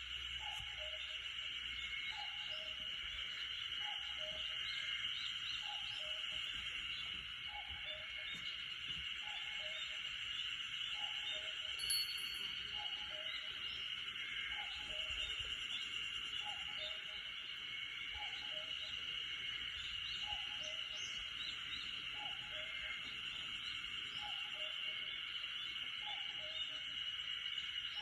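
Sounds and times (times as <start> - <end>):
cuckoo calling: 0.0 - 1.2, 2.1 - 4.9, 10.9 - 15.5, 16.3 - 17.4, 18.1 - 19.1, 19.8 - 23.5, 24.1 - 25.2, 26.0 - 26.9
faint bird chirps: 0.0 - 28.0
forest background hiss: 0.0 - 28.0.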